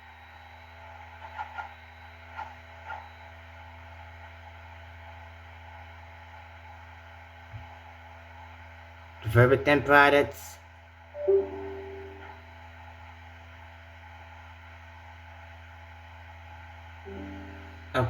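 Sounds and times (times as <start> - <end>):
steady low hum: 17.1 - 18.0.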